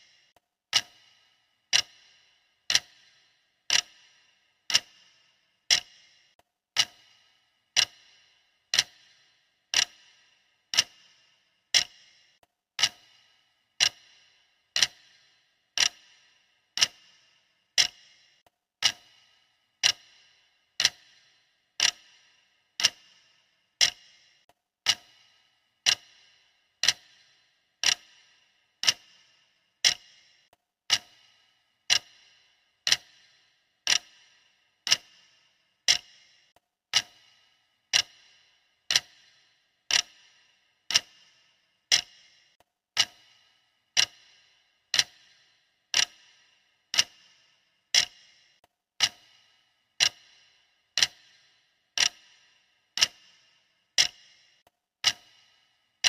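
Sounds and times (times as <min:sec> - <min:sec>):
clock ticking: 0:00.0 - 0:56.0.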